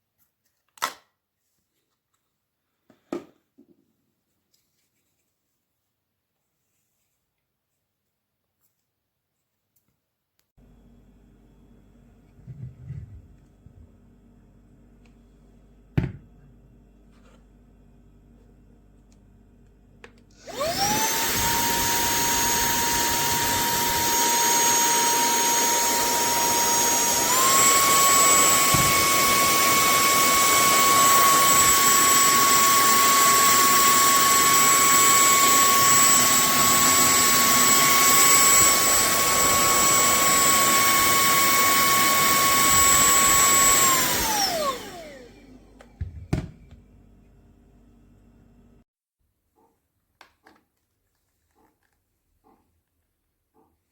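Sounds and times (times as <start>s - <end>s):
handheld vacuum cleaner whining: 20.3s - 46.9s.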